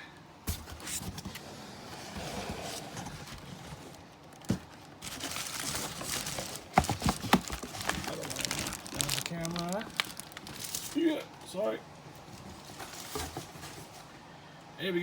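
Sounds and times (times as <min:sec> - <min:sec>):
packaging rustling: 0:03.0 - 0:11.1, 0:12.3 - 0:14.0
packaging knocks: 0:04.4 - 0:11.0.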